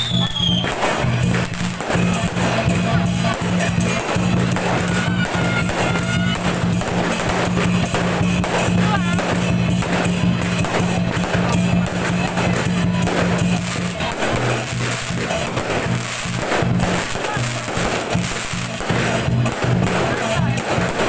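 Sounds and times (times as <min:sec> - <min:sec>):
whistling glides: 0:00.0 - 0:00.7
drumming music: 0:00.0 - 0:21.0
jingling percussion: 0:00.0 - 0:21.0.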